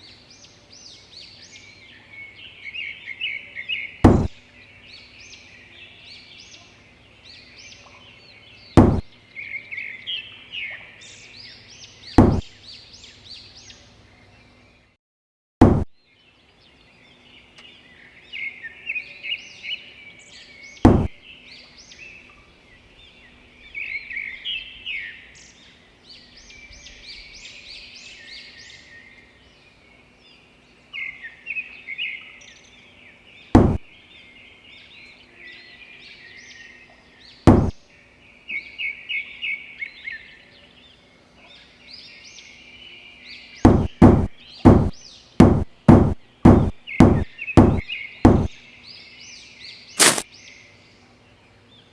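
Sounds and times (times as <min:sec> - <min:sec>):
tool knocking on wood: 0:04.1 - 0:04.4, 0:08.8 - 0:09.1, 0:12.2 - 0:12.5, 0:15.6 - 0:15.9, 0:20.9 - 0:21.2, 0:33.6 - 0:33.9, 0:37.5 - 0:37.8, 0:43.7 - 0:48.6
small birds chirping: 0:15.7 - 0:51.0.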